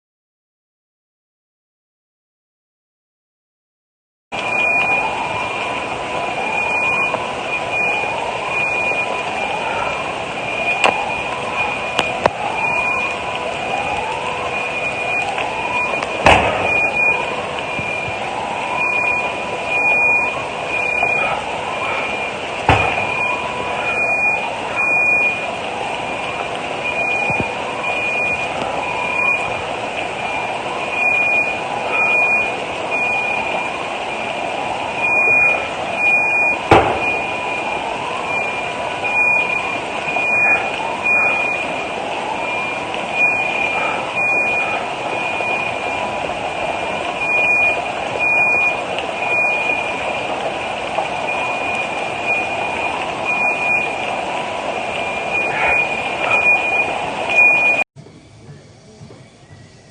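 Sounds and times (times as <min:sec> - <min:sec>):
rising whoop alarm: 0:04.4 - 0:57.9
sharp bangs: 0:16.2 - 0:17.1, 0:22.6 - 0:23.5, 0:36.7 - 0:37.4
high pulsing beeping tone: 0:55.0 - 0:57.8.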